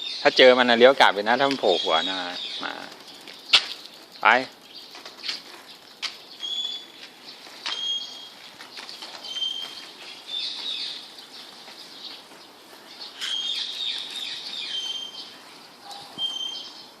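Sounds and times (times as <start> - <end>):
birds chirping: 0.0 - 17.0
sharp clicks: 3.2 - 3.9.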